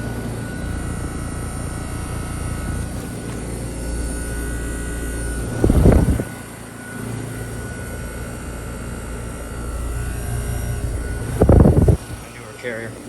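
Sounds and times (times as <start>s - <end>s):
heat pump fan and compressor hum: 0.0s - 13.0s
thin high whine: 0.0s - 13.0s
short loud rush: 5.5s - 6.4s.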